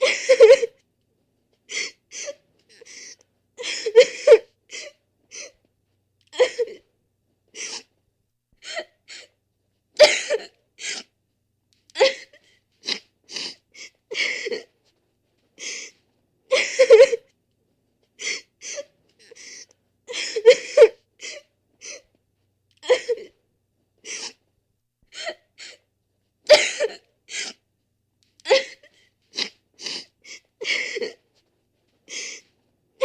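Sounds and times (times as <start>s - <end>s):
person crying and sobbing: 0.0s - 0.8s, 1.7s - 5.5s, 6.3s - 6.9s, 12.0s - 12.4s, 16.5s - 17.2s, 18.2s - 22.0s, 22.8s - 23.4s, 24.1s - 24.4s, 28.4s - 31.2s.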